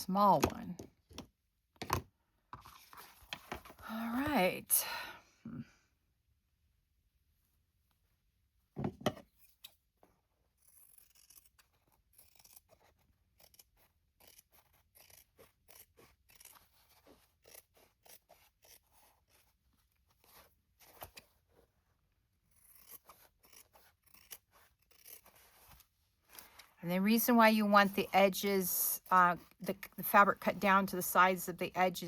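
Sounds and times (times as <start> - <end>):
scissors snipping fabric: 10.6 - 19.6, 22.5 - 25.8.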